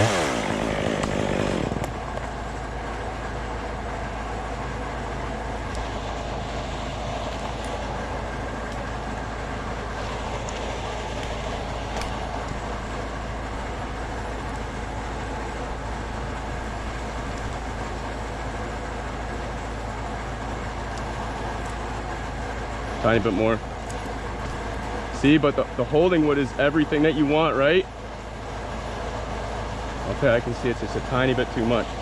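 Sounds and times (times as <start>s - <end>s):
engine running steadily: 0.0s - 32.0s.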